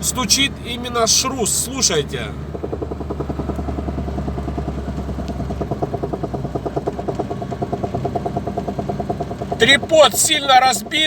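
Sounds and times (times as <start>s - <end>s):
engine hum: 0.0s - 11.0s
cv joint knocking: 2.4s - 10.4s.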